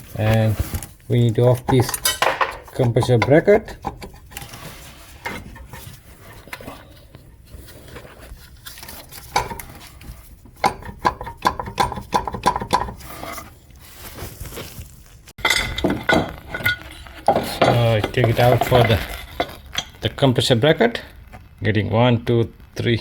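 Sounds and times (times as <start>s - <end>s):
metal tools clinking on bolts: 1.4s - 3.5s, 15.4s - 20.0s.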